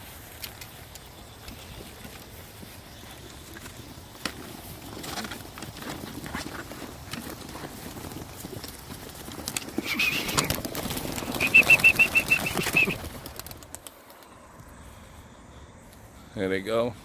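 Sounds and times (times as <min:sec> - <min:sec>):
pigeons fluttering in a crate: 0:00.0 - 0:14.4
clatter of wings: 0:00.1 - 0:14.4
high squeaks: 0:09.8 - 0:10.6.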